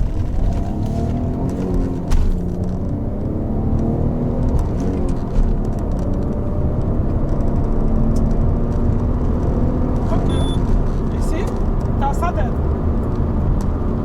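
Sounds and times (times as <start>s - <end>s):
car engine accelerating hard: 0.0s - 14.0s.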